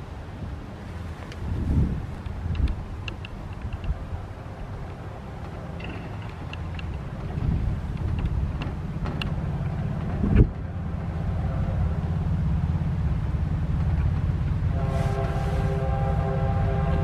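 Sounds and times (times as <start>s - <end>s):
locomotive engine rumble: 0.0s - 17.0s
locomotive air horn chord: 14.7s - 17.0s.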